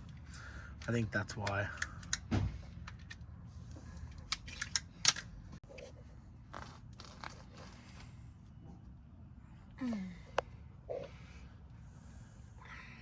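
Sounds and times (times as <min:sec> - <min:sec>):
wire strippers snipping clicks: 0:00.8 - 0:03.2.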